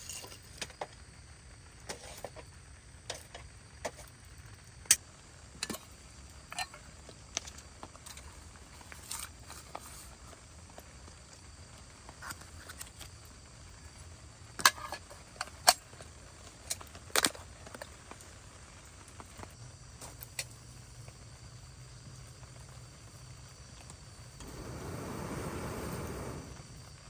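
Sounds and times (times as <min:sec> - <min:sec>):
faint low hum: 0:20.8 - 0:27.0.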